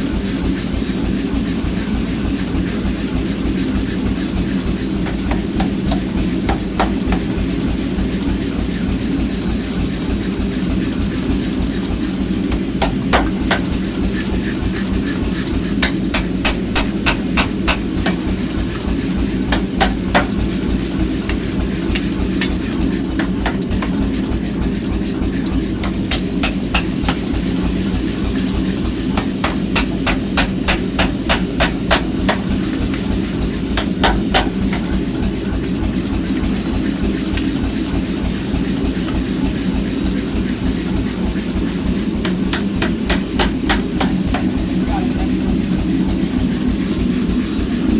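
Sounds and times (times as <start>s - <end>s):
low machine hum: 0.0s - 47.9s
hammer striking iron: 5.0s - 7.5s, 12.5s - 13.8s, 15.8s - 18.4s, 19.5s - 20.4s, 21.3s - 24.0s, 25.8s - 27.3s, 29.2s - 33.1s, 33.7s - 34.9s, 42.2s - 45.0s.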